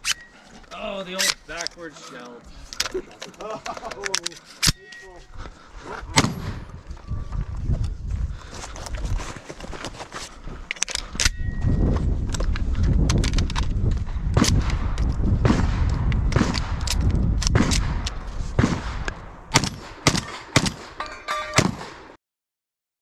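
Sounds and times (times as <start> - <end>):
low rumble on microphone: 11.4 - 19.5.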